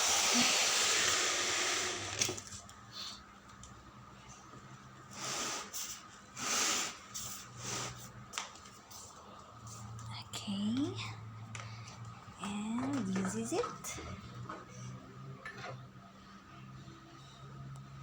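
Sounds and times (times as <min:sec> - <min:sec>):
steady hiss: 0:00.0 - 0:02.2, 0:05.1 - 0:09.9.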